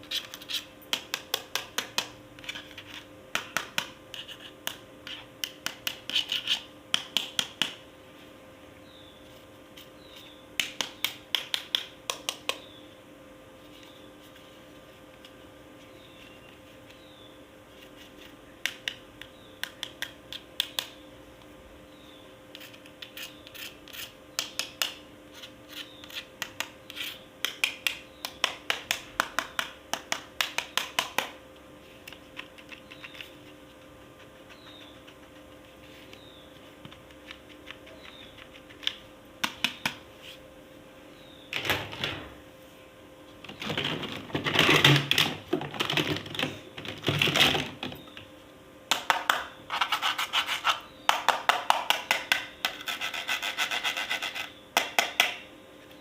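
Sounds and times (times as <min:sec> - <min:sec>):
scratchy rubbing and scraping: 0:04.1 - 0:05.3, 0:22.6 - 0:24.2, 0:49.7 - 0:50.9, 0:52.8 - 0:54.5.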